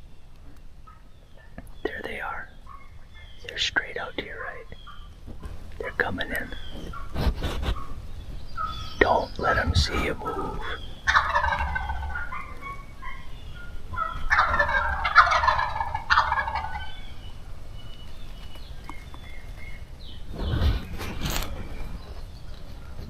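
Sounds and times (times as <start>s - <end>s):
turkeys gobbling: 0.5s - 17.4s.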